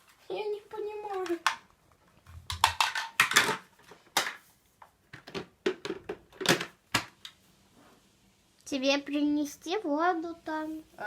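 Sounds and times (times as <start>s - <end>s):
plastic parts clicking and clacking: 1.1s - 4.4s, 5.1s - 7.1s.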